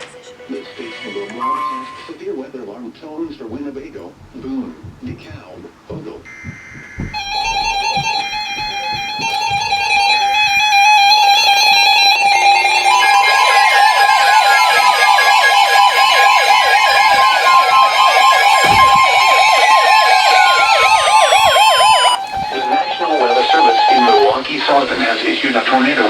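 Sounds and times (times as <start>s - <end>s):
warbling siren-like alarm: 6.3s - 24.7s.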